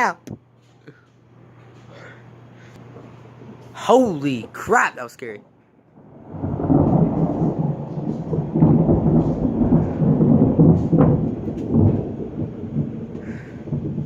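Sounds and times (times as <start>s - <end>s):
thunder rumbling: 5.9s - 14.0s.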